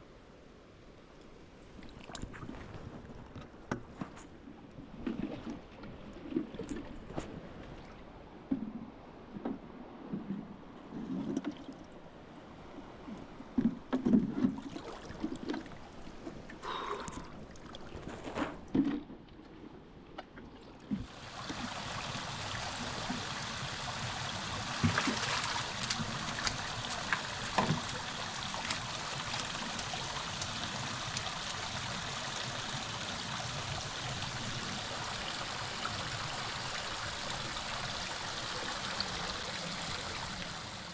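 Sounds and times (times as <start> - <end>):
stream water flowing: 21.0 - 40.9.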